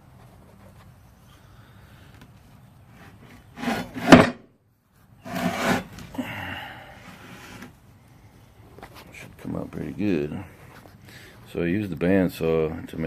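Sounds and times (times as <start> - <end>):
metal piece scraping on work surface: 3.0 - 4.4, 5.2 - 6.0.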